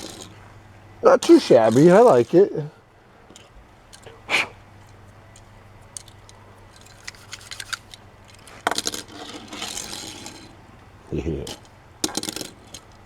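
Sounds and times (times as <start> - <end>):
toy car clicking and rattling: 0.0 - 0.4, 1.2 - 2.4, 5.4 - 10.6, 11.3 - 13.0.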